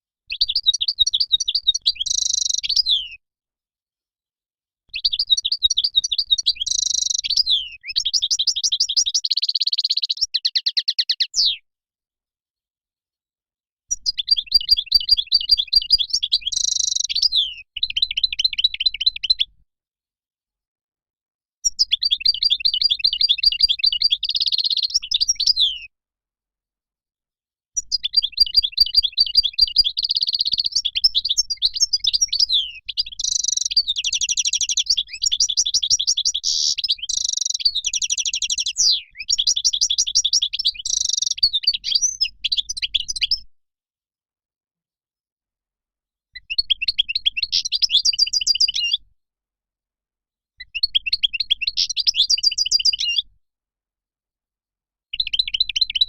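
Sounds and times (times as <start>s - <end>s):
goldfinch singing: 0.3s - 3.2s, 4.9s - 11.5s, 13.9s - 19.5s, 27.8s - 43.4s.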